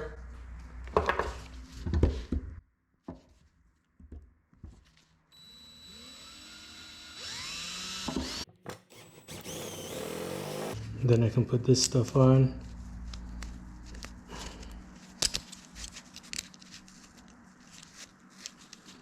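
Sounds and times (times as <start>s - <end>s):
small power tool running: 5.4s - 10.8s.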